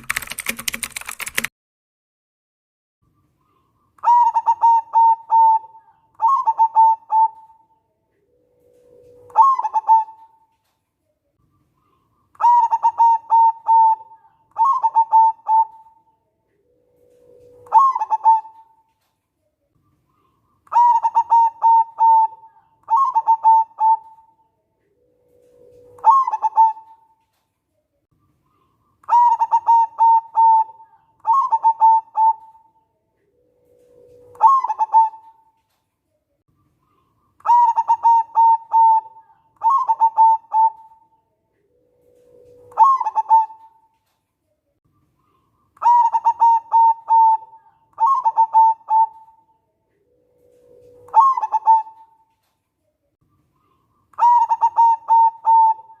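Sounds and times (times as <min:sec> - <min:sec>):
dove cooing: 0:03.4 - 0:10.6, 0:11.8 - 0:18.9, 0:20.1 - 0:27.4, 0:28.5 - 0:35.7, 0:36.8 - 0:44.0, 0:45.2 - 0:52.5, 0:53.5 - 0:56.0.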